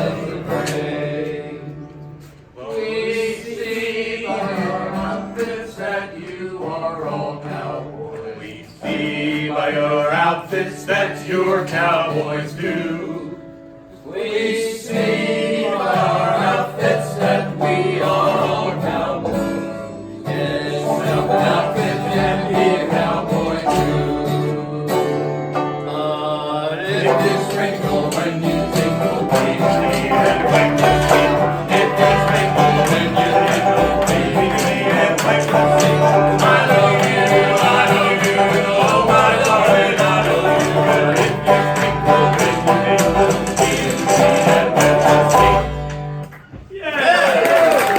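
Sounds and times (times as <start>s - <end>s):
band playing country music: 16.1s - 26.1s, 26.9s - 46.3s.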